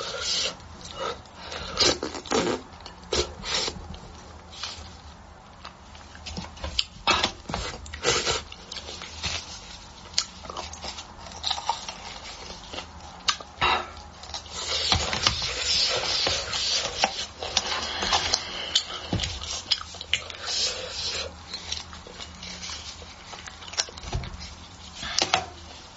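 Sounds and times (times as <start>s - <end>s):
wet chewing and biting: 5.6s - 25.2s.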